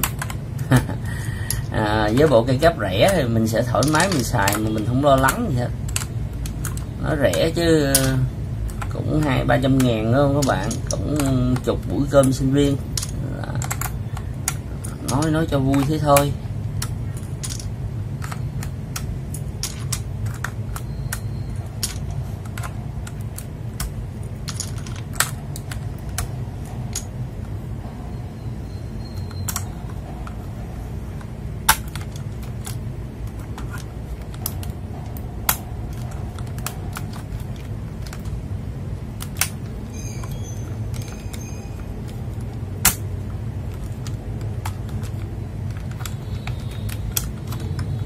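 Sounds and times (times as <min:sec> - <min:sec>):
low hum: 0:00.0 - 0:48.0
mechanical keyboard clicks: 0:31.2 - 0:38.4, 0:39.2 - 0:48.0.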